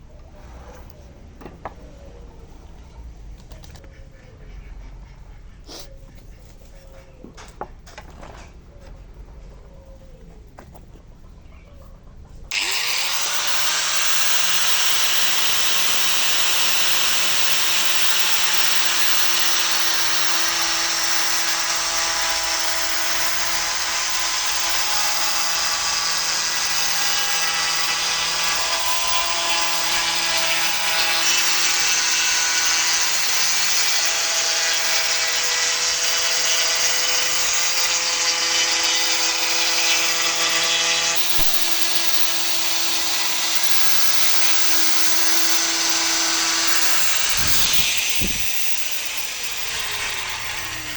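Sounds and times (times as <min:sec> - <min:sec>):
router cutting wood: 0:12.5 - 0:50.9.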